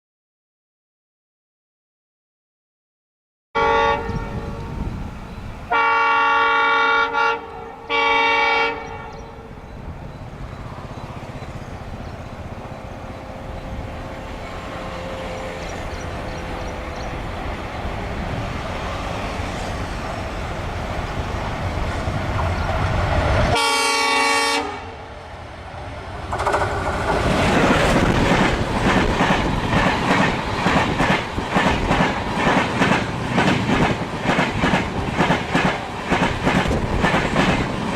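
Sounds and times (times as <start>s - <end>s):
locomotive horn blasts: 3.6s - 4.8s, 5.7s - 9.4s, 23.5s - 25.1s
train wheels clacking over rail joints: 26.3s - 37.9s.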